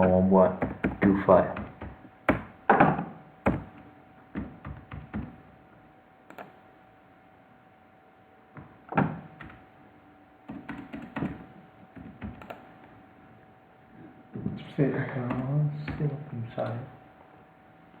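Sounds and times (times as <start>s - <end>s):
faint steady hum: 0.0s - 18.0s
computer keyboard keystrokes: 3.4s - 5.4s, 6.3s - 6.6s, 10.5s - 12.7s.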